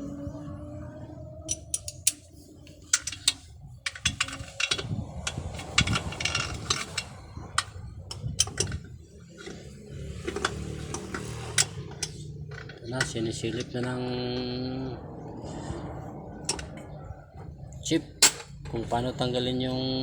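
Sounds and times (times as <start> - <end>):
steady low hum: 0.0 - 20.0
metal tools clinking on metal: 1.4 - 14.1, 16.4 - 17.0.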